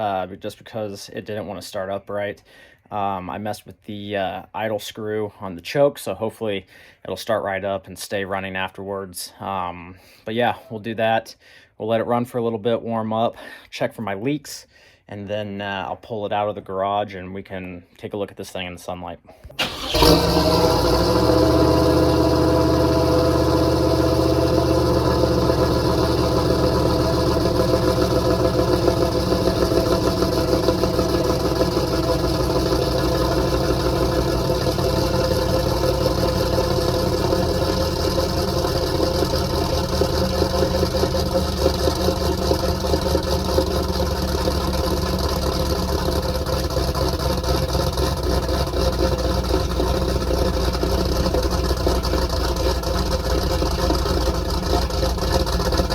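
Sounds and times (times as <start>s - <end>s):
engine idling loud: 19.6s - 55.9s.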